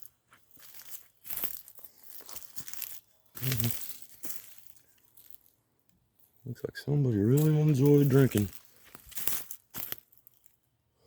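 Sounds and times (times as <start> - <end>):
dry leaves crunching and rustling: 0.0 - 5.5, 7.2 - 10.5
low grunt: 3.4 - 3.8.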